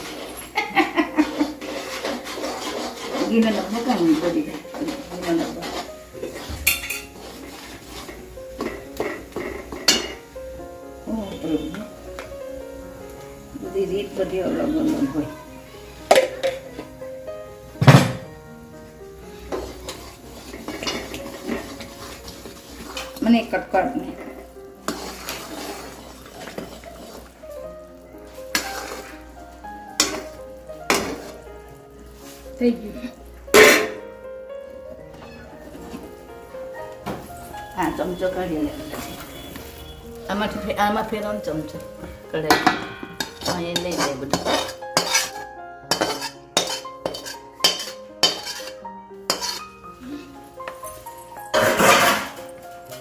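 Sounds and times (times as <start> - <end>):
metal ladle scraping metal pot: 0.0 - 10.2, 19.5 - 27.4, 28.5 - 29.2, 30.0 - 31.4, 33.5 - 34.0, 42.5 - 49.8, 51.5 - 52.5
background music with held notes: 0.0 - 53.0
metal spoon knocking on pan: 16.1 - 16.6, 42.4 - 45.3.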